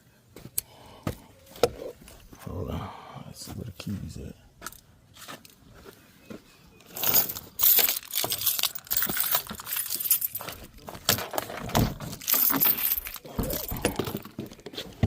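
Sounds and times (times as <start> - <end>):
keys jangling: 6.9 - 11.4, 12.0 - 14.4.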